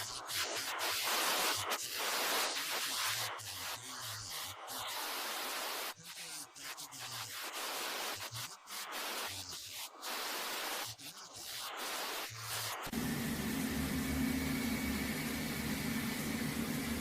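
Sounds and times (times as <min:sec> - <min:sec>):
steady rushing hiss: 0:00.0 - 0:17.0
engine humming: 0:12.9 - 0:17.0.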